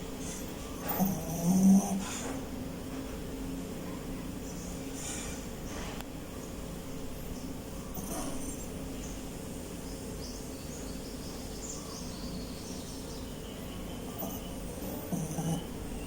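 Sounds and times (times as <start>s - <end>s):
steady background hiss: 0.0s - 16.0s
dog snoring softly: 0.2s - 2.5s, 7.9s - 8.7s, 14.1s - 16.0s.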